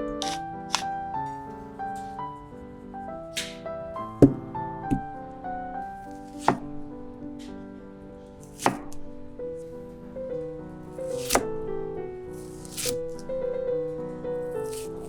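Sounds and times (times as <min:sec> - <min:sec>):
soft piano music: 0:00.0 - 0:15.0
knife chopping on cutting board: 0:00.2 - 0:00.9, 0:04.2 - 0:05.1, 0:06.0 - 0:07.0, 0:08.4 - 0:09.2, 0:11.0 - 0:11.6, 0:12.3 - 0:13.3, 0:14.6 - 0:15.0.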